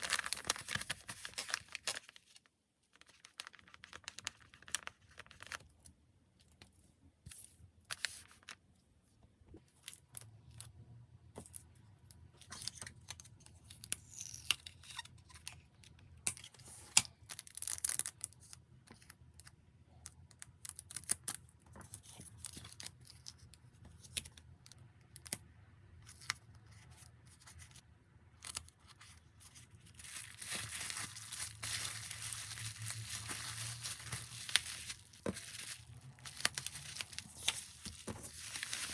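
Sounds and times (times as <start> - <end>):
plastic packaging crinkling: 0.0 - 2.5, 28.4 - 38.9.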